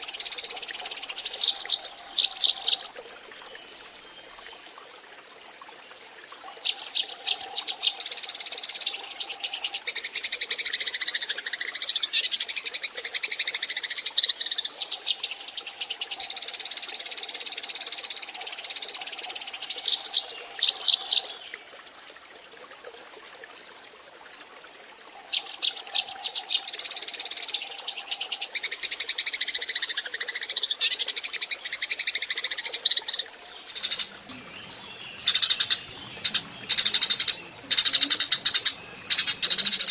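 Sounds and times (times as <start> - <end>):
sparrows chattering: 33.6 - 39.9.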